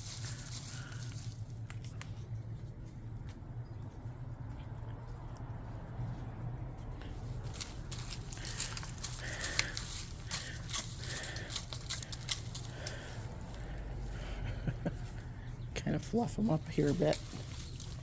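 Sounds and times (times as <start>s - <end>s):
snow crackling off branches: 7.2s - 13.7s.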